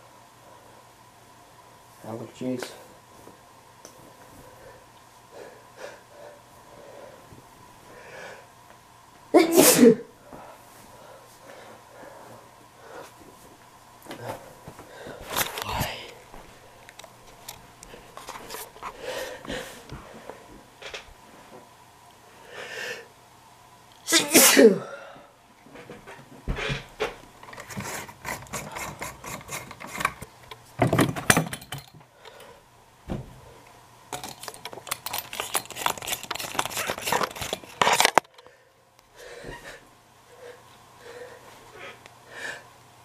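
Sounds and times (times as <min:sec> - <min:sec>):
man sneezing: 0:09.4 - 0:10.1, 0:24.0 - 0:24.9
scraping and clicking rustle: 0:34.2 - 0:38.4.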